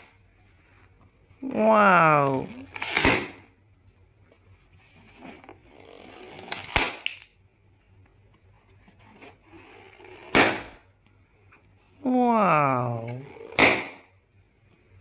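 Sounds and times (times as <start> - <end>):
balloon popping: 13.0 - 14.0.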